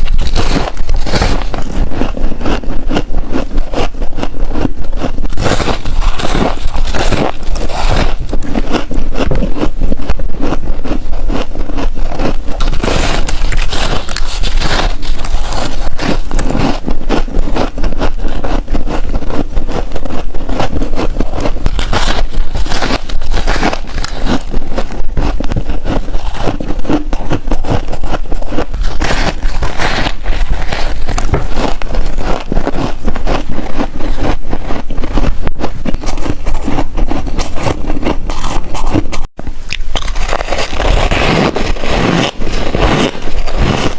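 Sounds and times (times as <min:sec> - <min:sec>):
crunching frost: 0:00.0 - 0:43.9.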